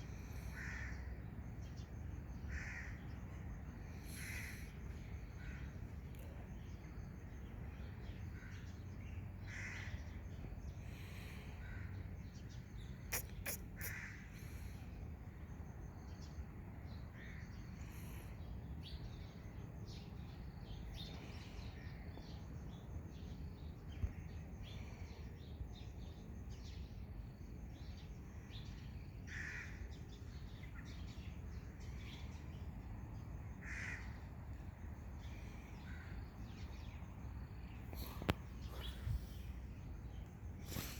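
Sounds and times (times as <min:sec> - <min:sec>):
animal calls: 0:13.1 - 0:14.2.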